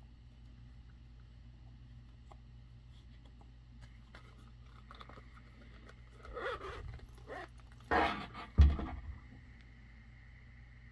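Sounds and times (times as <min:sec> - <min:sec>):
case thumping down: 0:08.6 - 0:09.2.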